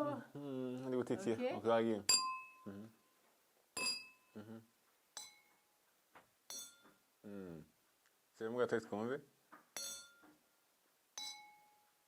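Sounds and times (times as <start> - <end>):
glass-like clinks: 2.1 - 2.7, 3.8 - 4.4, 5.2 - 5.6, 6.5 - 7.0, 9.8 - 10.4, 11.2 - 11.9.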